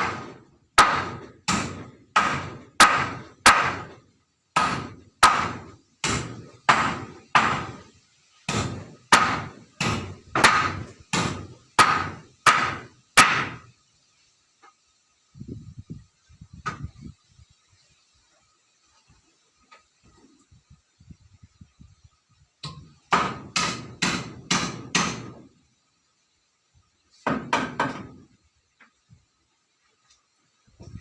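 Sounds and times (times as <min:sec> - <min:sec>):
hammer driving nails into wood: 0:00.0 - 0:04.0, 0:04.6 - 0:07.9, 0:08.5 - 0:13.7, 0:22.6 - 0:25.5, 0:27.2 - 0:28.3.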